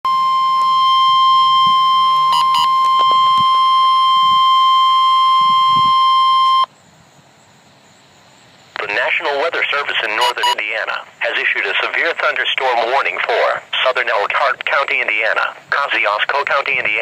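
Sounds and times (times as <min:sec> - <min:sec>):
loud steady high alert tone: 0:00.0 - 0:06.7, 0:10.0 - 0:10.8.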